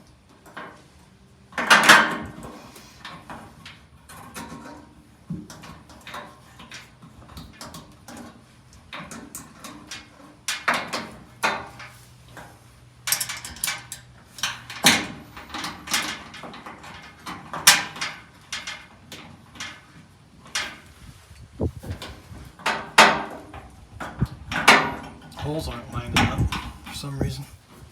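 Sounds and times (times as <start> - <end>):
metal parts clicking and knocking: 13.0 - 19.9.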